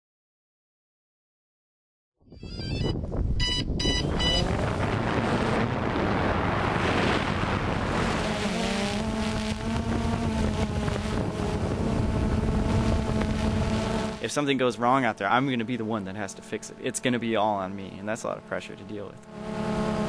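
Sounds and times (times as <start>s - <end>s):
short electronic beeps: 2.4s - 4.5s
wind rushing: 2.6s - 14.0s
drone motors humming: 2.6s - 20.0s.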